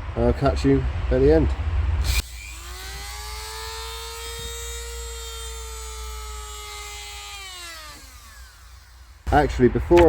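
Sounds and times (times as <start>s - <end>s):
rotary tool whining: 2.0s - 10.0s.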